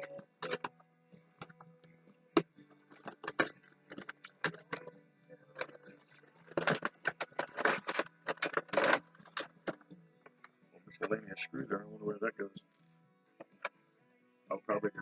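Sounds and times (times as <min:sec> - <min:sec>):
packaging rustling and crinkling: 0:02.9 - 0:04.9, 0:05.6 - 0:09.8.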